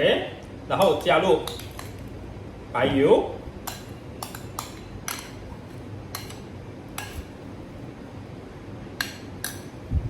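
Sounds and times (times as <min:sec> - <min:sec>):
low steady hum: 0:00.0 - 0:10.0
utensil clinking against bowl: 0:00.7 - 0:02.1, 0:03.6 - 0:07.4, 0:09.0 - 0:09.8.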